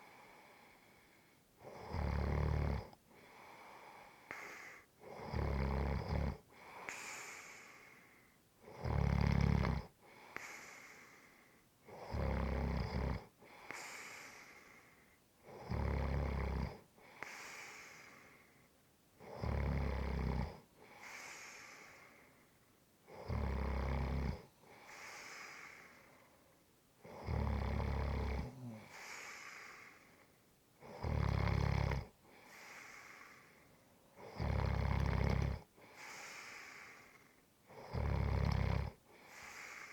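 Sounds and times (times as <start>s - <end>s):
person snoring: 1.6s - 3.0s, 4.3s - 7.8s, 8.6s - 11.2s, 11.9s - 14.7s, 15.5s - 16.8s, 19.2s - 20.6s, 23.1s - 26.1s, 27.0s - 30.1s, 30.8s - 33.6s, 34.2s - 39.9s
airy out-breath: 28.5s - 30.2s, 32.3s - 33.8s, 35.8s - 37.3s, 39.2s - 39.9s.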